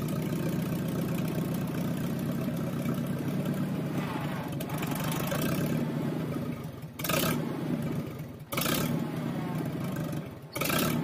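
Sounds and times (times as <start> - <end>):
clatter: 0.0 - 11.0
heavy equipment engine revving: 3.3 - 11.0.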